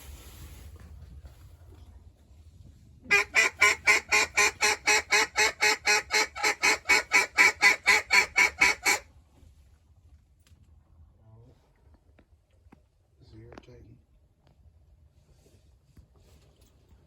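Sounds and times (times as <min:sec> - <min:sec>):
duck call quacks: 0:03.1 - 0:09.0.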